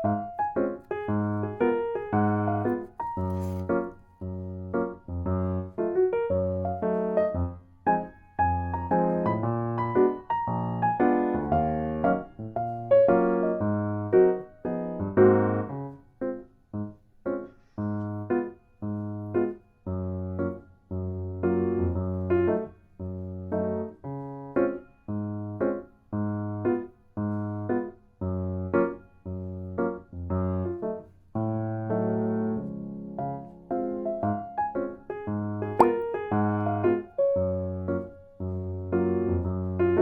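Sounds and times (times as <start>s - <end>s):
light keyboard tune: 35.8s - 36.2s.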